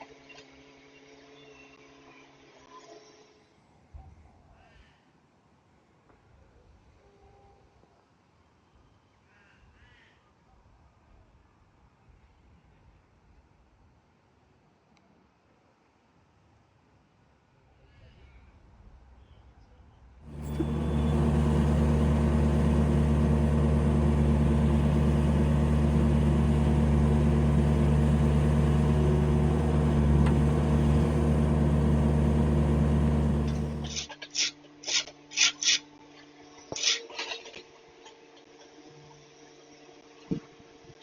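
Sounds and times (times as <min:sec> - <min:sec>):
large engine running steadily: 0:20.2 - 0:34.1.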